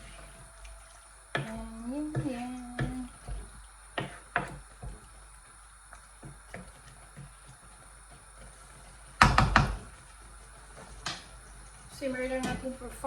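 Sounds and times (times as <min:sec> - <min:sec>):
utensil knocking on cooking pot: 0:01.3 - 0:05.0, 0:09.2 - 0:09.9.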